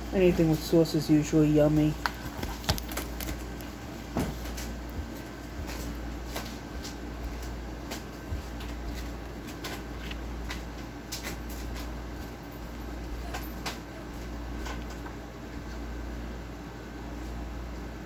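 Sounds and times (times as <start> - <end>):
steady low hum: 0.0 - 18.0
book pages turning: 1.9 - 3.8, 4.4 - 12.3.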